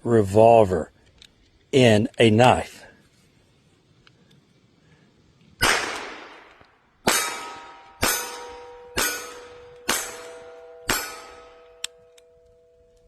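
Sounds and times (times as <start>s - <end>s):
gunshots: 5.6s - 11.5s
metallic ringing: 7.0s - 13.0s.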